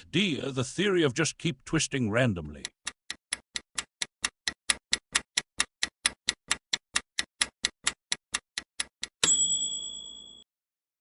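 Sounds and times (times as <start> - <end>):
fast timer ticking: 0.4 - 9.4
bright bell-like chime: 9.2 - 10.5.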